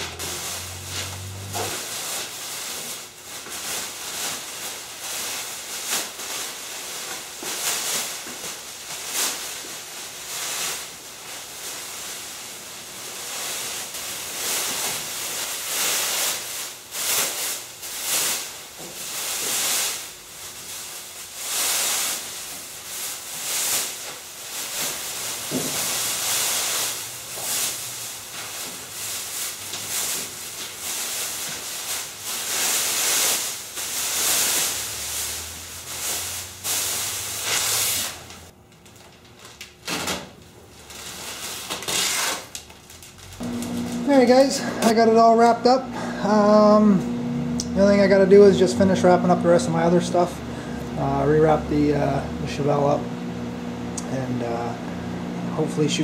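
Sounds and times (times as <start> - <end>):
masking tape pulled off roll: 0.0 - 2.9, 23.4 - 38.5, 41.0 - 43.6
plastic sheeting rustling: 0.0 - 56.0.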